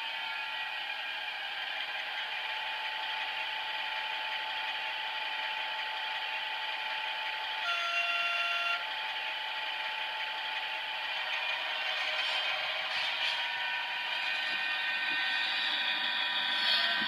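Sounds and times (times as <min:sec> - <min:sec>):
diesel engine through small speaker: 0:00.0 - 0:17.0
locomotive horn: 0:07.6 - 0:09.0.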